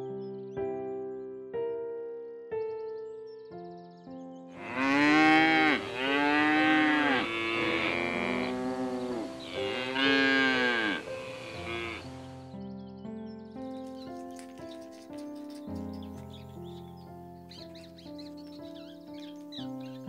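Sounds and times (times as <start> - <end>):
soft background music: 0.0 - 20.0
long animal calls: 4.6 - 12.3.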